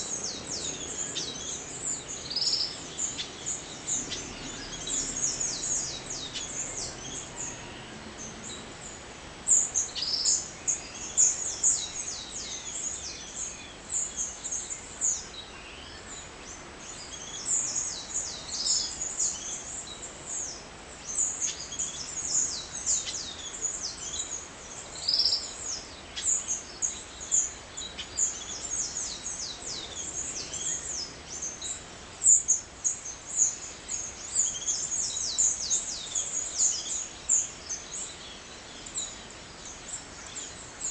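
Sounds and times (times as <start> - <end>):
faint steady hiss: 0.0 - 40.9
small birds chirping: 0.0 - 40.9.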